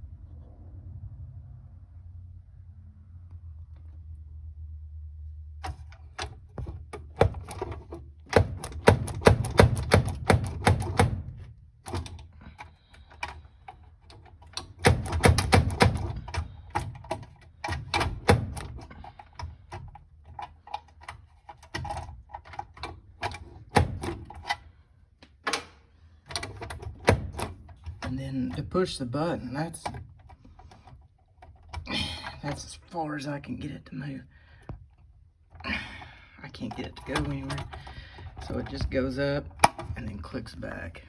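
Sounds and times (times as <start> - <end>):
glovebox latch clicking and rattling: 5.6 - 24.7, 25.3 - 28.7, 36.6 - 40.0.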